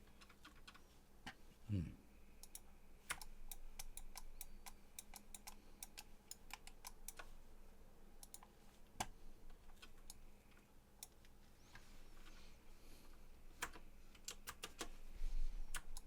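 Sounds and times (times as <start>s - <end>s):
keyboard and mouse clicking: 2.4s - 7.3s, 8.2s - 11.3s, 13.6s - 14.9s, 15.7s - 16.0s.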